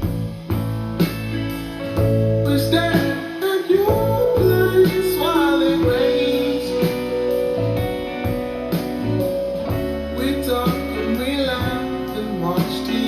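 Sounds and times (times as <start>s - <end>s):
acoustic guitar: 0.0s - 13.0s
steady bass: 0.0s - 13.0s
person singing long notes: 2.4s - 7.2s.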